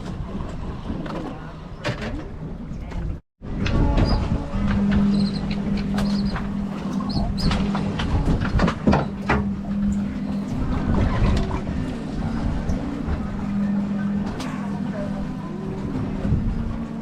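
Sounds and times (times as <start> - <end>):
boat engine humming: 0.0 - 17.0
short high squeaks: 5.0 - 7.7.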